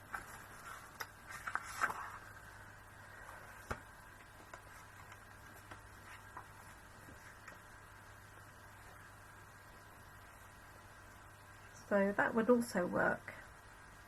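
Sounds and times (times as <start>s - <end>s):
paper rustling: 0.0s - 2.4s, 3.2s - 7.7s
faint steady hum: 0.0s - 14.0s.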